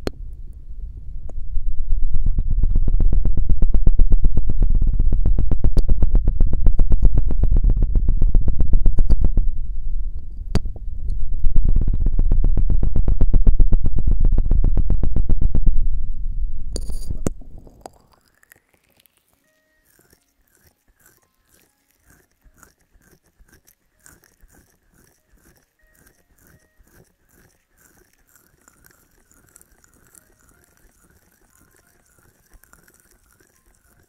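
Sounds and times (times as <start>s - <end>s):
feather rod rubbing on microphone: 16.8s - 17.4s.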